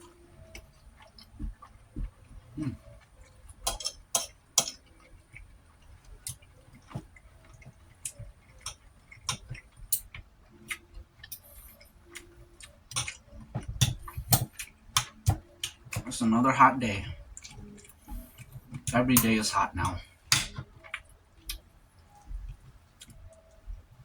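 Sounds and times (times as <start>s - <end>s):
chewing and lip smacking: 4.7s - 16.2s, 17.1s - 19.0s.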